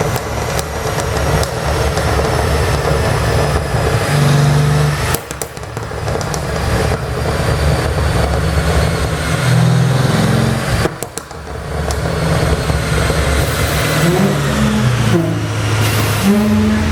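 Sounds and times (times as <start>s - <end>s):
car engine exhaust under throttle: 0.0s - 16.9s
exhaust pops and crackles: 0.0s - 16.9s.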